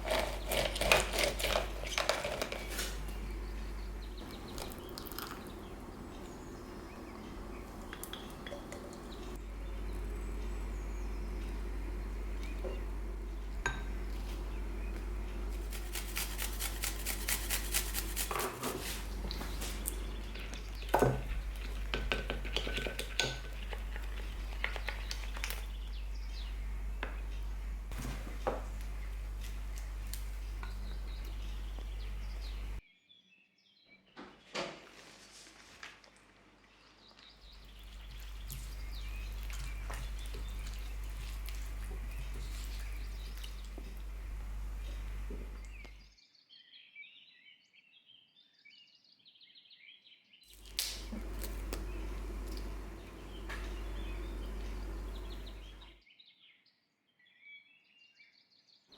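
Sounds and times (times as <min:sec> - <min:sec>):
steady low hum: 0:00.0 - 0:32.8, 0:37.4 - 0:46.1, 0:50.5 - 0:56.0
dishes and cutlery clinking: 0:13.6 - 0:14.3, 0:20.3 - 0:24.9.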